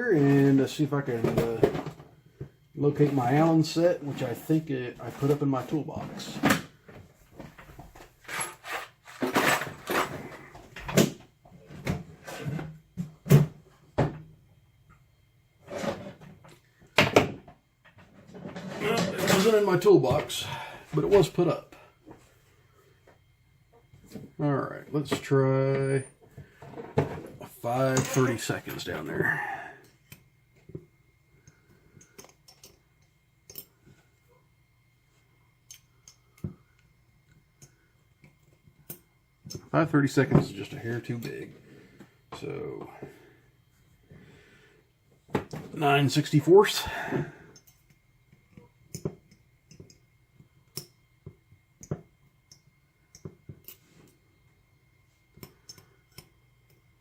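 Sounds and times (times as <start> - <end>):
tools clattering in a toolbox: 7.6 - 10.4, 18.3 - 19.7.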